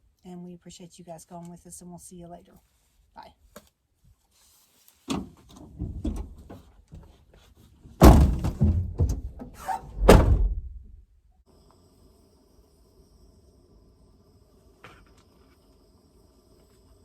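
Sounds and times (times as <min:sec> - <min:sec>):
knocks and heavy thumps: 0:05.2 - 0:07.1, 0:08.0 - 0:11.0
faint steady hum: 0:10.2 - 0:17.0.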